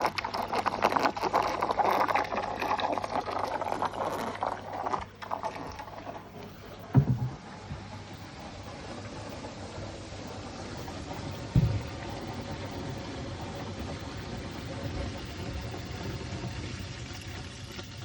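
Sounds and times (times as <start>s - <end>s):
water gurgling in drain pipes: 0.0s - 18.0s
steady low hum: 4.5s - 16.0s
low thump: 6.9s - 7.9s, 11.5s - 12.2s.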